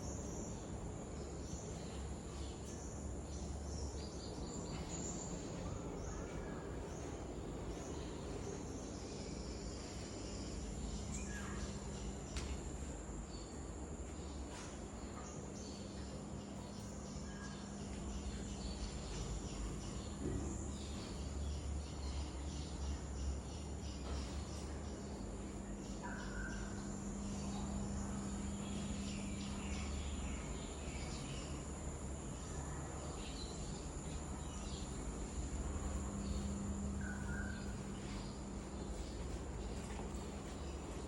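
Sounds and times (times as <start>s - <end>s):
low hum: 24.4s - 41.0s.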